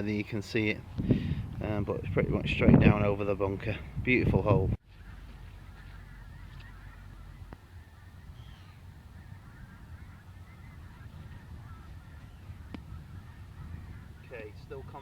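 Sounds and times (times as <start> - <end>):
flock of birds calling: 4.9 - 15.0.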